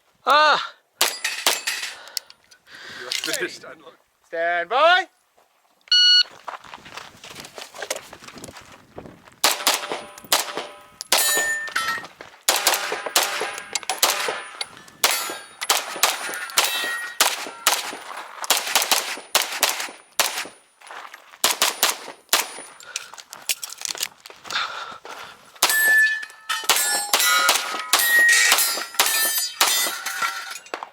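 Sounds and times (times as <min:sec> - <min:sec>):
ringing steel targets: 0:01.0 - 0:02.4, 0:09.5 - 0:18.1, 0:21.6 - 0:22.8, 0:25.6 - 0:30.8
pistol shots: 0:09.4 - 0:11.7, 0:12.5 - 0:20.6, 0:21.4 - 0:22.7, 0:25.6 - 0:30.8.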